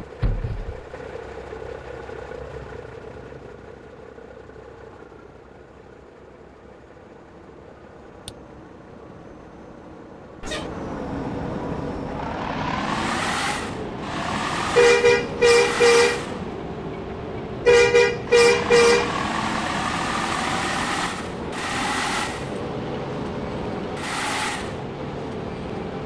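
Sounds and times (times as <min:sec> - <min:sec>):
road traffic: 0:00.0 - 0:26.0
heavy vehicle engine revving: 0:10.4 - 0:16.7, 0:17.7 - 0:25.9.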